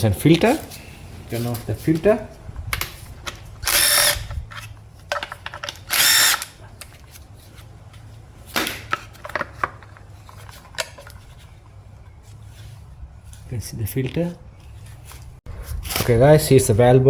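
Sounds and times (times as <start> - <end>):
power driver whirring: 3.6 - 4.4, 5.8 - 6.6.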